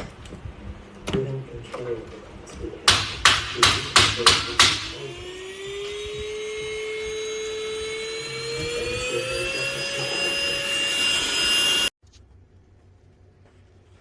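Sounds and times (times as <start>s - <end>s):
handheld vacuum motor whine: 4.9s - 11.9s.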